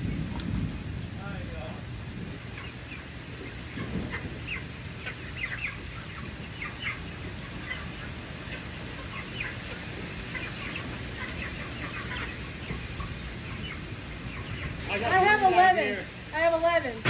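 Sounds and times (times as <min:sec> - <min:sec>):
young chickens chirping and clucking: 0:00.0 - 0:17.0.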